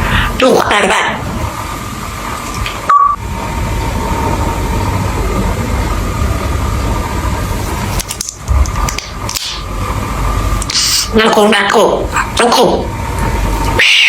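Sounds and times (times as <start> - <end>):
high whine: 0.0 - 14.0
machine rumble: 0.0 - 14.0.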